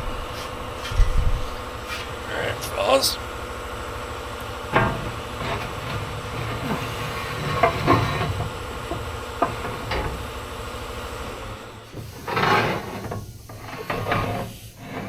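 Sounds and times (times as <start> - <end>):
steady low hum: 0.0 - 15.0
metal clanks and knocks: 4.7 - 10.8, 11.9 - 15.0.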